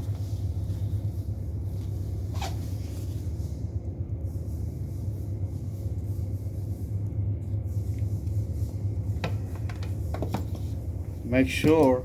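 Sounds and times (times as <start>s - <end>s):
steady low rumble: 0.0s - 12.0s.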